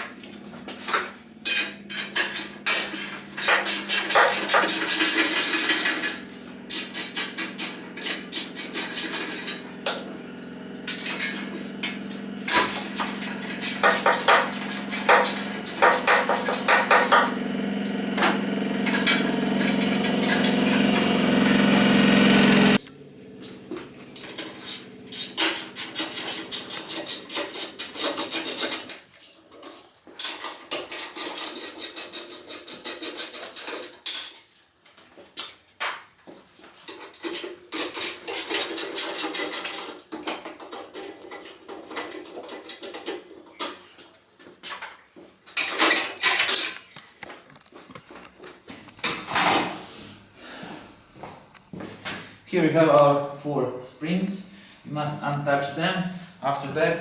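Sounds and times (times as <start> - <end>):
steady hum: 0.0 - 28.7
metal tools clinking and rattling: 0.8 - 9.6, 45.6 - 47.4.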